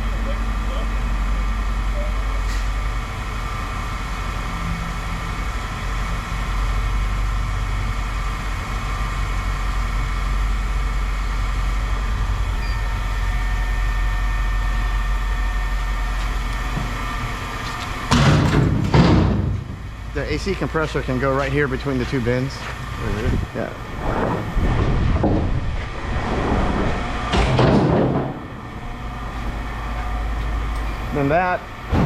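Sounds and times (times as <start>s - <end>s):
faint steady whine: 0.0s - 18.2s
engine idling: 0.0s - 24.8s.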